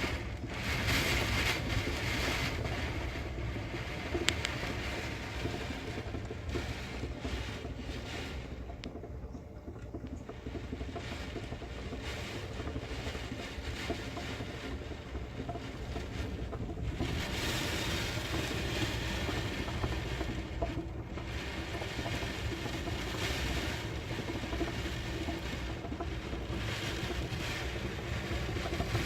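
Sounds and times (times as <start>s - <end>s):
heavy rain: 0.0s - 8.6s, 10.4s - 29.0s.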